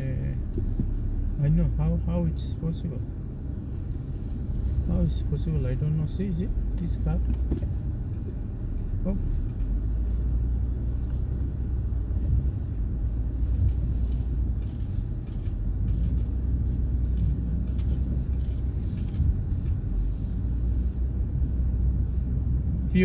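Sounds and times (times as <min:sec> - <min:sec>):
vehicle engine rumble: 0:00.0 - 0:23.0
tyre noise on road: 0:06.2 - 0:23.0.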